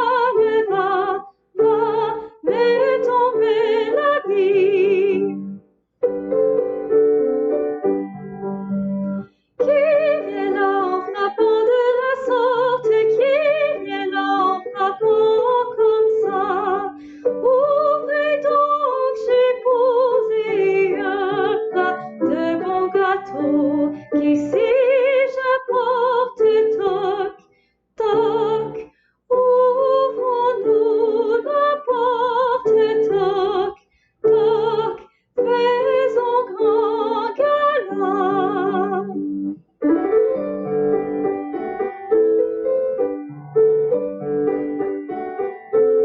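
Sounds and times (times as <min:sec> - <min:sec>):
woman singing classically: 0:00.0 - 0:05.4, 0:09.6 - 0:27.4, 0:28.0 - 0:39.2
piano: 0:00.0 - 0:46.0.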